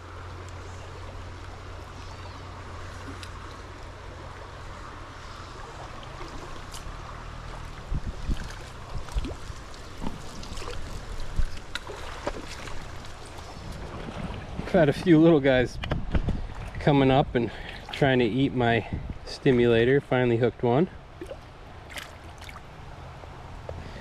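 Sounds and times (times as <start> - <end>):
stream water rushing: 0.0 - 15.4, 21.0 - 24.0.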